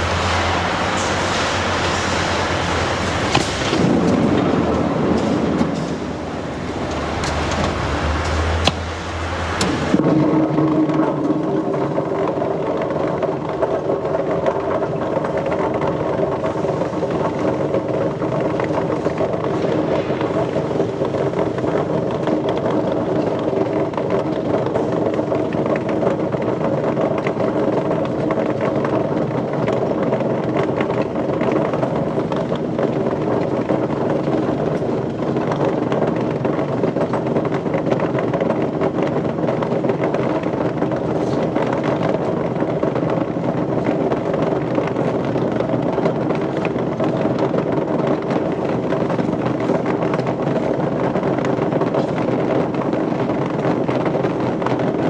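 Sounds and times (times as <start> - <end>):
machinery humming: 0.0 - 25.8.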